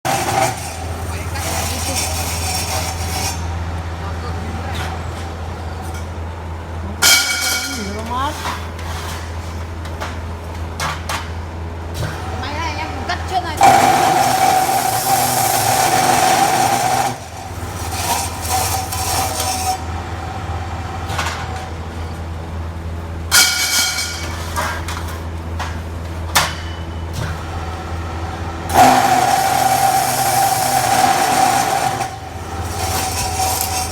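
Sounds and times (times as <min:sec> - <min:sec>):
motor humming: 0:00.0 - 0:07.0, 0:11.8 - 0:23.2, 0:27.0 - 0:33.9
saw blade cutting with ringing whine: 0:00.1 - 0:03.7, 0:13.6 - 0:20.1, 0:28.6 - 0:33.9.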